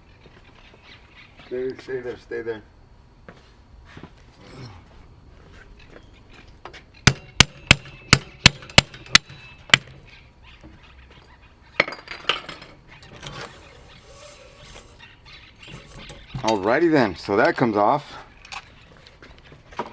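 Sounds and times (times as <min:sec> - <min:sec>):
metal striking metal ringing knocks: 0:07.1 - 0:10.0.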